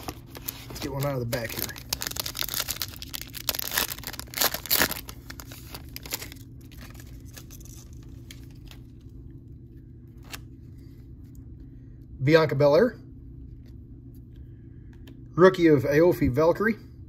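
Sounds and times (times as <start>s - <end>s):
card pack wrapper crinkling and tearing: 0.0s - 9.1s.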